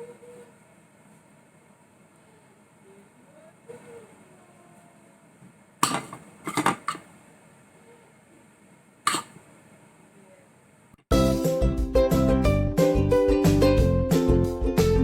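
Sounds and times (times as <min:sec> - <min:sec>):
dishes and utensils clattering: 0:05.8 - 0:07.1, 0:09.1 - 0:09.4.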